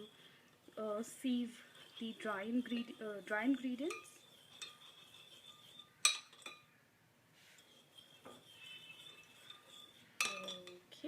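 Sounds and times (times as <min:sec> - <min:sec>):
spoon clinking against cup: 0:08.4 - 0:10.8.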